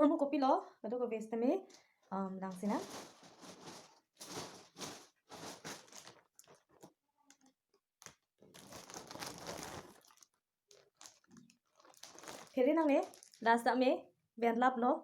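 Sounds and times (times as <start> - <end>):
crinkly packaging rustling: 1.7 - 13.7.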